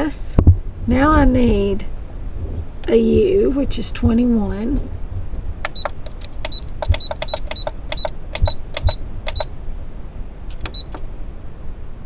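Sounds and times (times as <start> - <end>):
sewing machine button clicks: 5.7 - 9.5, 10.5 - 11.0
short high beeps: 5.7 - 9.5, 10.7 - 11.0.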